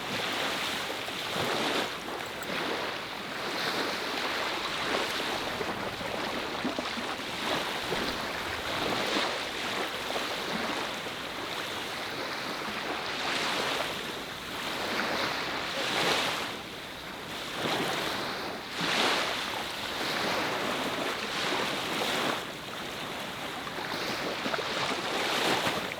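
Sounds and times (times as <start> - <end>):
sea waves washing onto shore: 0.0 - 13.2.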